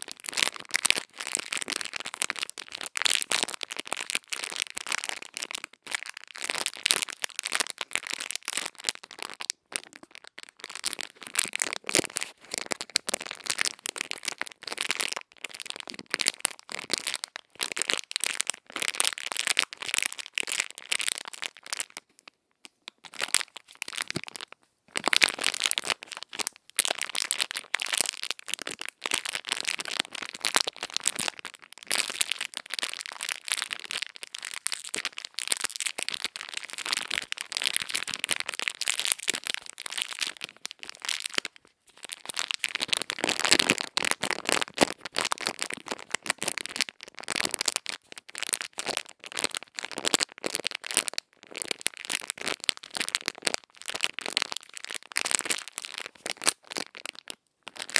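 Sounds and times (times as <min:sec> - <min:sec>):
crackling and scratching on microphone: 0:23.0 - 0:52.6.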